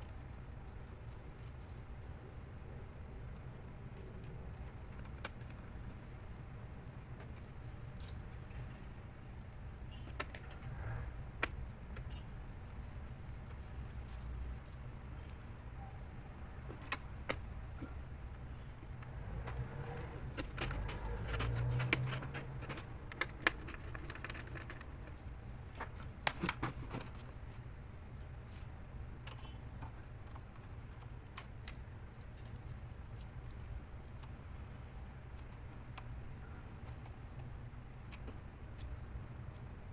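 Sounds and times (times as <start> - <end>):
clicks and taps of laptop parts: 9.9 - 10.6.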